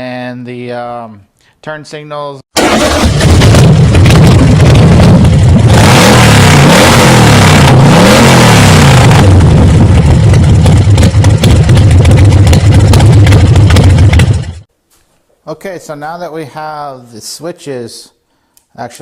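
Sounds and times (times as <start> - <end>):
dirt bike engine revving: 2.6 - 14.4.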